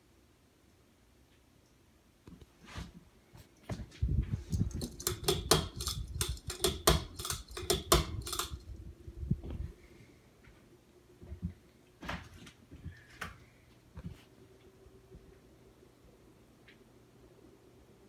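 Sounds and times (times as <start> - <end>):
ceiling fan humming: 0.0 - 18.0
rapid clacking and knocking: 4.5 - 8.7.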